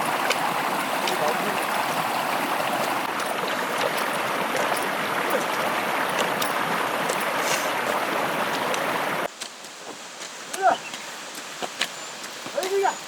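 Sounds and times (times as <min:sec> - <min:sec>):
water running: 0:00.0 - 0:09.3.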